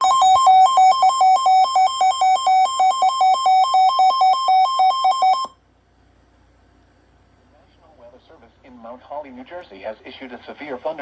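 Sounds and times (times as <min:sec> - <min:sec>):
buzzy electronic warning tone: 0:00.0 - 0:05.6.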